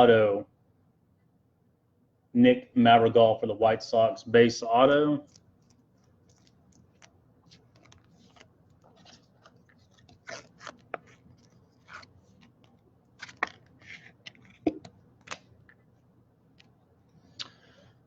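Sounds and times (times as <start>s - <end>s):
trading cards being handled: 5.2s - 16.8s.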